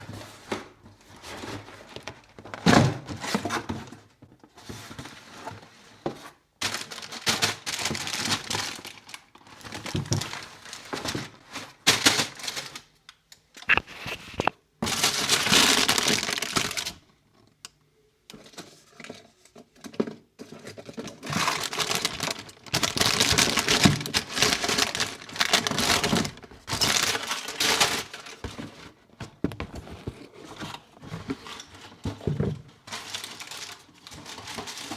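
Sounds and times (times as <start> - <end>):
paper and plastic crinkling: 6.6 - 12.9, 13.7 - 17.0, 20.4 - 34.9.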